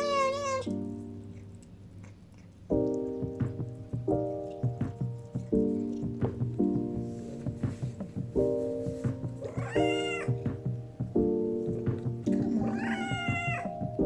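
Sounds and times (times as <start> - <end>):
cat meowing: 0.0 - 0.8, 9.4 - 10.7, 12.3 - 13.9
background music: 2.7 - 14.0.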